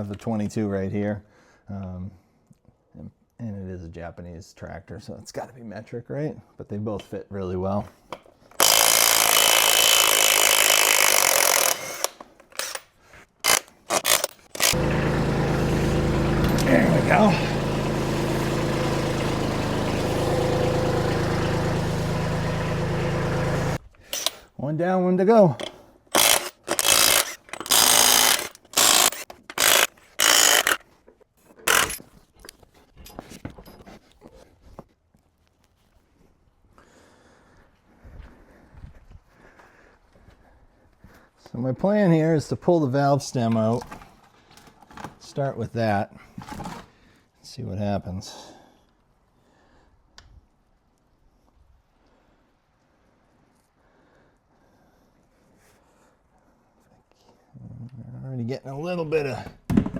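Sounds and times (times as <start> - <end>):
impact wrench running: 8.5 - 12.8, 13.4 - 24.4, 25.6 - 30.8, 31.6 - 32.0
socket ratchet clicking: 13.4 - 14.8, 26.1 - 30.8.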